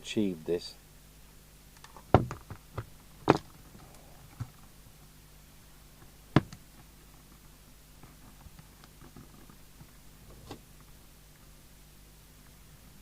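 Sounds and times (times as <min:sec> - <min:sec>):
low steady hum: 0:00.0 - 0:13.0
knocks on workbench: 0:02.1 - 0:03.4.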